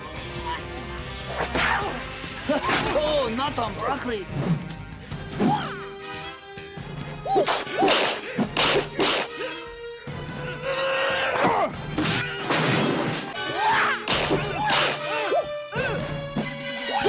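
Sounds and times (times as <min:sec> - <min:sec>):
music: 0:00.0 - 0:17.0
slapstick whacks and crashes: 0:07.4 - 0:09.4, 0:14.0 - 0:15.1.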